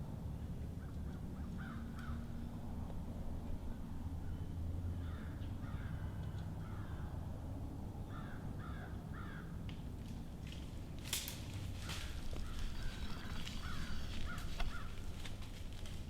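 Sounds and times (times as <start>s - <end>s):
steady low rumble: 0.0s - 16.0s
crows cawing: 1.4s - 2.3s, 4.9s - 7.2s, 8.0s - 9.6s, 11.7s - 15.4s.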